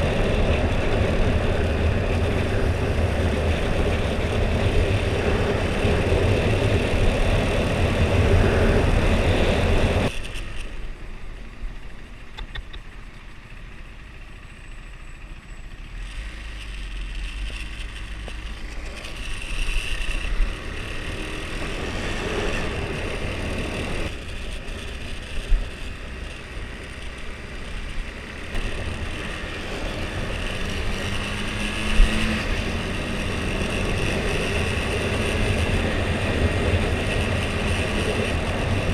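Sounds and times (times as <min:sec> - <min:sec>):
wind rush: 0:00.0 - 0:10.1, 0:18.6 - 0:24.7, 0:27.8 - 0:38.9
motorcycle engine: 0:00.0 - 0:38.9.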